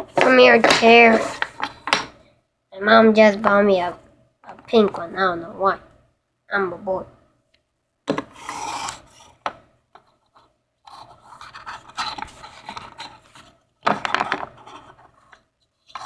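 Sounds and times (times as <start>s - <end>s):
scraping against a chair: 0.0s - 1.6s.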